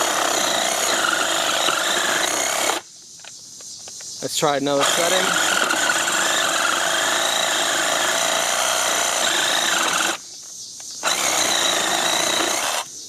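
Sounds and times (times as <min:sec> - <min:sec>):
oscillating multi-tool cutting: 0:00.0 - 0:02.8, 0:04.7 - 0:10.2, 0:11.0 - 0:12.9.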